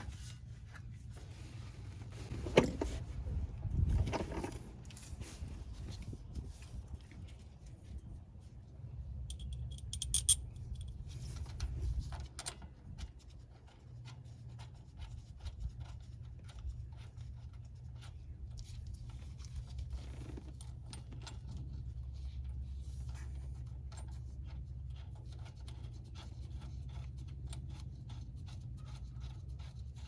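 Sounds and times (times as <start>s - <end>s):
steady low hum: 4.8s - 16.9s
metal parts clinking and scraping: 9.2s - 12.6s
metallic jingle: 9.3s - 10.9s.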